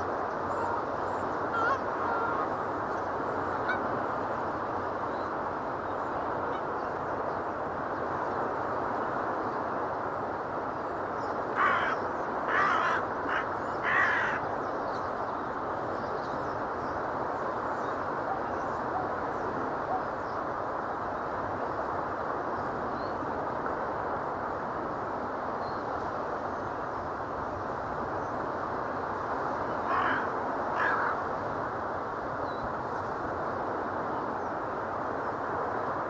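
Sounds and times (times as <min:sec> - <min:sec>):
gulls calling: 0:00.4 - 0:02.7, 0:11.6 - 0:14.4, 0:29.7 - 0:31.3.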